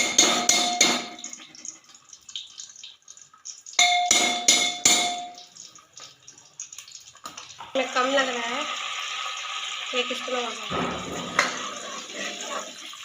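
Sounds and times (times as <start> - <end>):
metal spoon clinking on steel: 0.0 - 1.3, 3.8 - 5.5.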